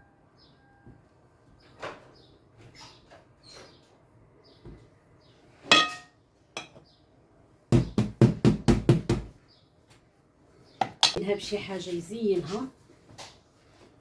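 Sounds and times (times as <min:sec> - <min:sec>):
kitchenware clink: 0:05.7 - 0:06.8.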